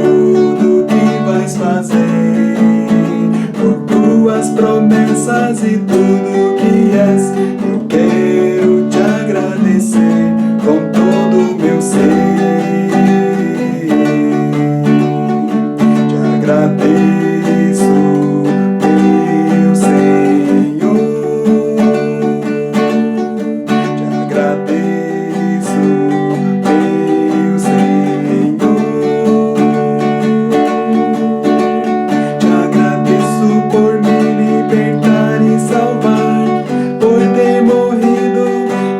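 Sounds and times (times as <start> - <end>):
acoustic guitar strumming: 0.0 - 38.9.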